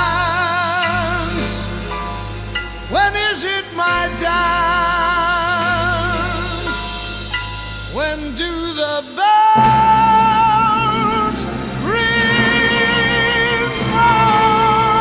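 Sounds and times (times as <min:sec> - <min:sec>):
man singing a slow ballad: 0:00.0 - 0:15.0
instrumental accompaniment: 0:09.6 - 0:15.0.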